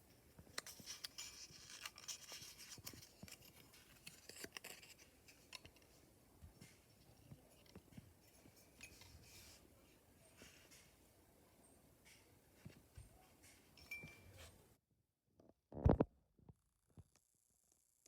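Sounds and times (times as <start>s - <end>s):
dry scratching: 0.5s - 5.8s.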